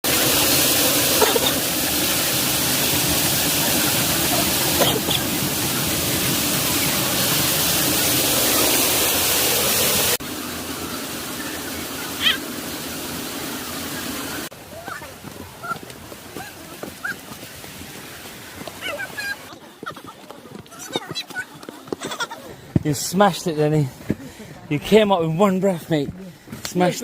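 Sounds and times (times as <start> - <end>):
waterfall rushing: 0.0 - 19.5.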